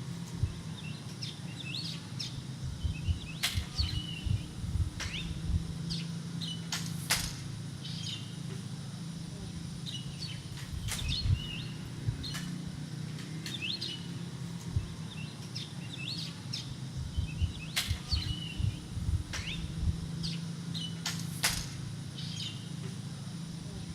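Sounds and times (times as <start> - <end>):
low thumps: 0.0 - 0.9, 2.4 - 7.8, 9.3 - 12.9, 14.3 - 15.2, 16.7 - 20.4
steady low hum: 0.0 - 23.9
wild birds chirping: 0.0 - 23.9
sharp clicks: 2.2 - 5.6, 6.6 - 7.5, 10.2 - 14.0, 17.4 - 22.0.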